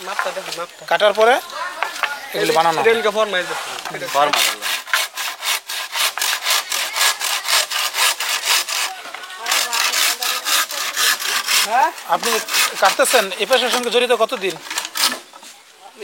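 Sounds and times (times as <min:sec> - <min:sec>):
hand saw cutting bamboo: 0:03.8 - 0:15.3.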